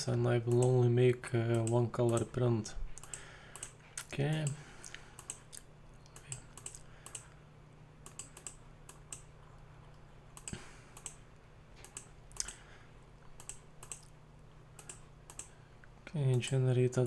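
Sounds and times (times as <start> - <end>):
low steady hum: 0.0 - 17.0
keyboard and mouse clicking: 0.5 - 0.8, 1.5 - 2.4, 3.0 - 4.6, 5.2 - 7.3, 8.0 - 9.3, 10.4 - 11.2, 11.8 - 12.6, 13.4 - 14.2, 14.8 - 15.6, 16.3 - 16.6.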